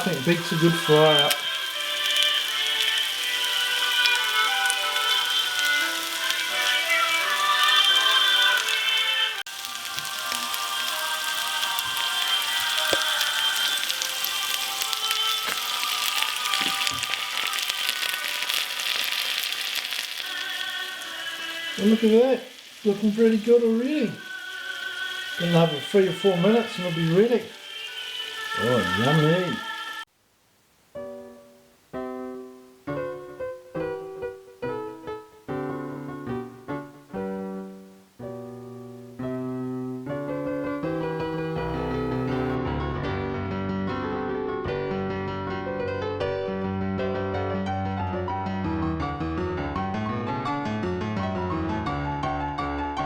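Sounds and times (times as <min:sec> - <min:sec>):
piano notes and chords: 0:00.0 - 0:24.5, 0:28.5 - 0:29.8, 0:31.0 - 0:53.0
food sizzling in a pan: 0:00.0 - 0:30.1, 0:40.3 - 0:42.6.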